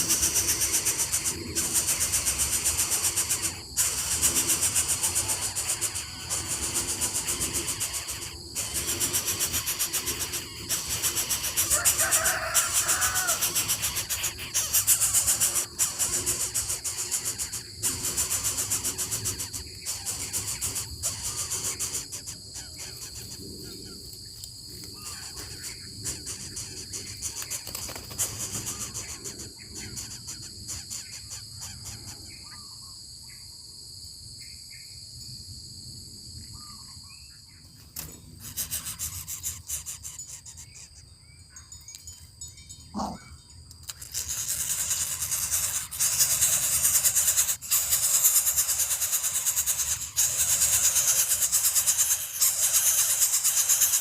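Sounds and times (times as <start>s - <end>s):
bird chirps: 0.0s - 24.0s, 25.0s - 33.6s, 38.3s - 54.0s
insect buzzing: 0.0s - 32.4s, 37.8s - 41.1s, 42.5s - 54.0s
rising call: 42.8s - 43.4s.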